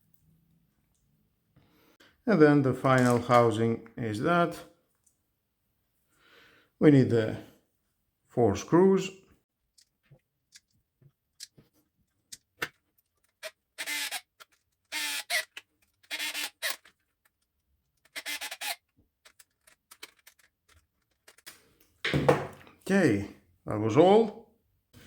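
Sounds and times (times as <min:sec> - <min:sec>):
screwdriver driving screws into plastic: 0:13.8 - 0:17.0, 0:18.0 - 0:20.5.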